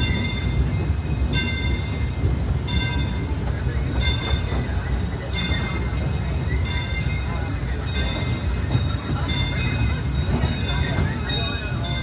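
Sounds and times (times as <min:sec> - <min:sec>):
train wheels rumbling on track: 0:00.0 - 0:12.0.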